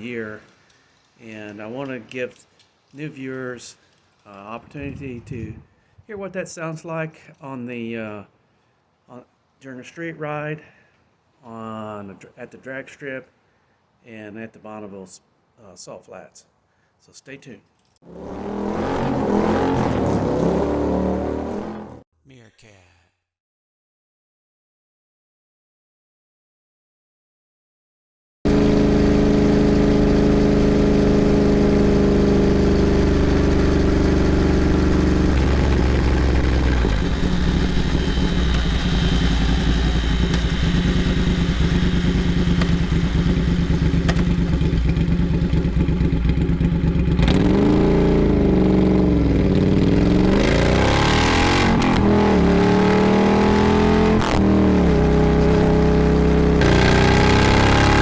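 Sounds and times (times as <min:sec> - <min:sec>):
motorcycle engine revving: 0:18.0 - 0:22.0, 0:28.5 - 0:58.0.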